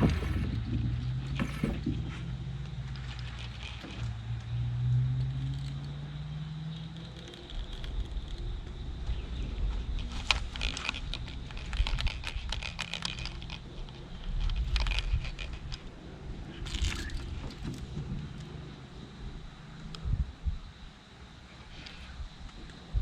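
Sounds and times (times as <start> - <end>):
clicking and rattling objects handled: 0.0 - 2.0, 10.0 - 15.8
wind rumble on microphone: 0.0 - 23.0.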